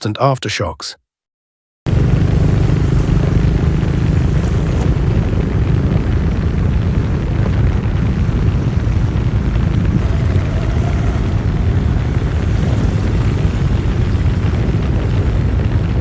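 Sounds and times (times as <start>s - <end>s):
loud low rumble with hiss: 1.9s - 16.0s.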